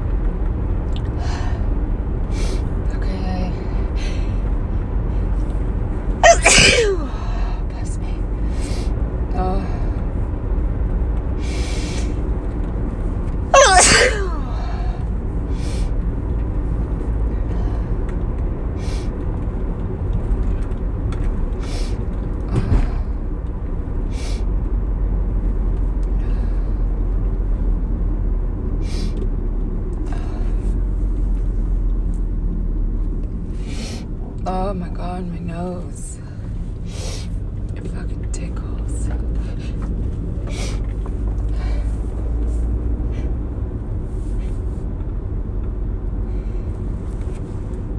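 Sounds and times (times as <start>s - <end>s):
steady low hum: 0.0s - 47.9s
person sneezing: 6.2s - 7.2s, 13.6s - 14.8s
hissing sniffs: 33.7s - 34.1s, 36.9s - 37.3s.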